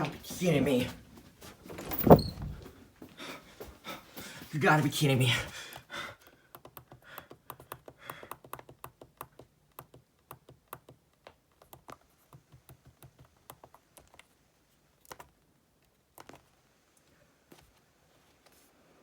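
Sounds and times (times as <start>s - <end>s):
typing on computer keyboard: 6.5s - 14.3s.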